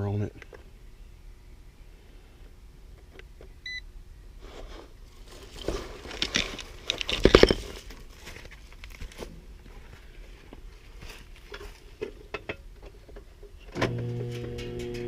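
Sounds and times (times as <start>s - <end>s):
short electronic beep: 3.6s - 3.8s
clicking and rattling handling noise: 5.3s - 15.0s.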